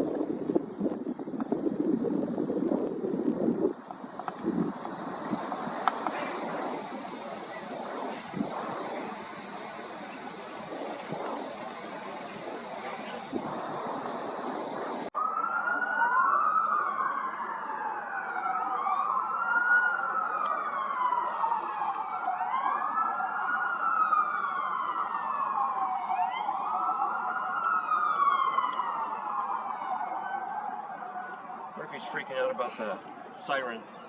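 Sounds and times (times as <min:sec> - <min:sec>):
rushing noise: 0:00.0 - 0:15.1
siren wailing: 0:03.0 - 0:34.0.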